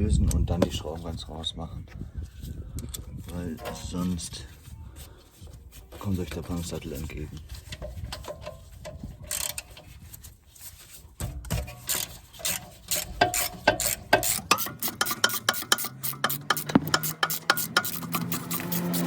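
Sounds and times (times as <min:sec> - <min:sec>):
ratchet clicking: 0:09.3 - 0:09.6, 0:11.9 - 0:19.0.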